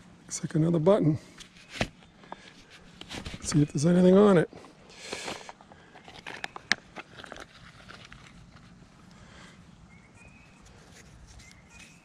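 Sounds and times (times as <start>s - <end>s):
faint rustling: 1.3s - 3.8s.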